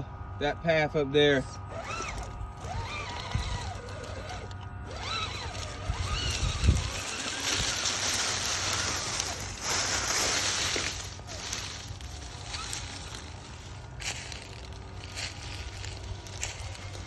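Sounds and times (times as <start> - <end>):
electric motor and gears whining: 0.0 - 17.0
tyres hissing over dirt: 4.9 - 17.0.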